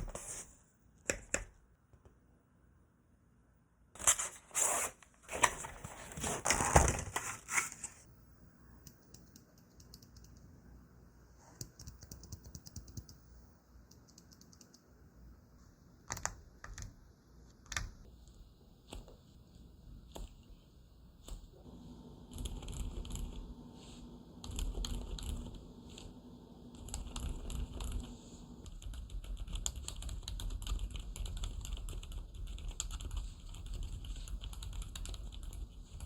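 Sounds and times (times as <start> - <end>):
muffled keyboard keystrokes: 11.6 - 13.2, 16.1 - 17.0, 17.7 - 18.0.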